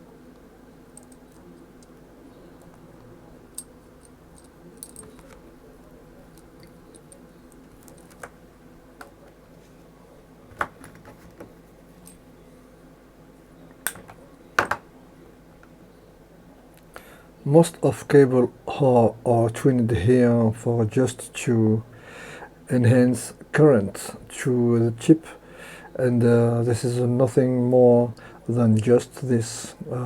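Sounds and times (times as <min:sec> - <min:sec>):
faint steady hum: 0:00.0 - 0:30.0
small tools clicking and tapping: 0:03.5 - 0:05.4.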